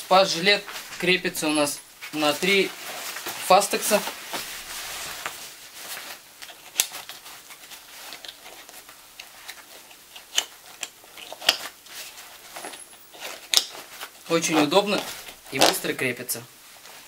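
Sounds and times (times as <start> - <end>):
fabric and straps rustling: 0.0 - 17.0.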